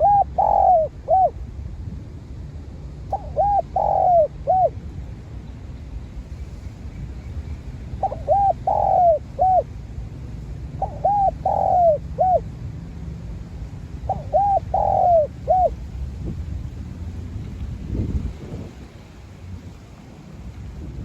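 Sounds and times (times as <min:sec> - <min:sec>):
dove cooing: 0:00.0 - 0:01.4, 0:03.1 - 0:04.8, 0:08.0 - 0:09.7, 0:10.8 - 0:12.5, 0:14.0 - 0:15.8
steady low rumble: 0:00.0 - 0:21.0.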